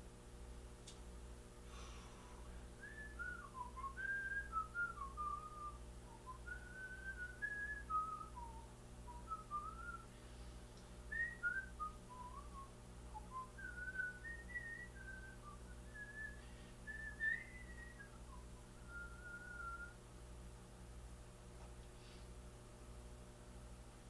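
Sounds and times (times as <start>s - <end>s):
microwave oven humming: 0.0s - 24.0s
person whistling a tune: 2.8s - 10.1s, 11.1s - 20.0s.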